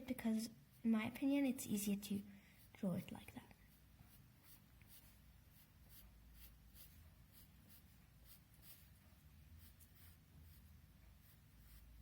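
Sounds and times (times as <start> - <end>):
drawing tool scratching paper: 3.7 - 12.0.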